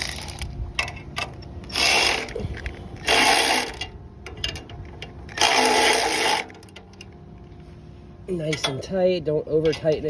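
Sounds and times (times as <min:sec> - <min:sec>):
ratchet tool tightening bolt: 0:00.0 - 0:00.9.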